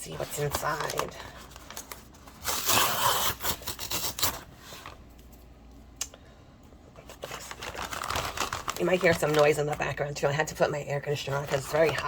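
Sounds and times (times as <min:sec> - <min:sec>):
wrapping ripping and rustling: 0:00.0 - 0:05.0, 0:07.0 - 0:10.2
package handling: 0:07.0 - 0:09.8.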